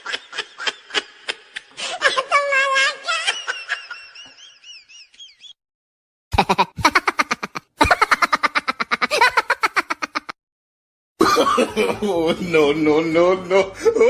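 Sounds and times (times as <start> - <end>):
cartoonish laughter: 6.3 - 10.4.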